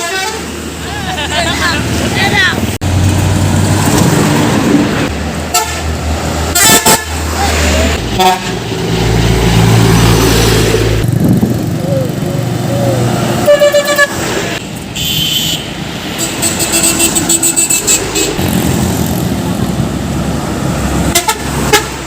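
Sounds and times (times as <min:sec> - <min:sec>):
musical truck horns blasting: 0:00.0 - 0:00.5, 0:05.5 - 0:07.2, 0:08.0 - 0:08.9, 0:13.4 - 0:14.3, 0:21.0 - 0:22.0
truck engines rumbling: 0:00.0 - 0:22.0.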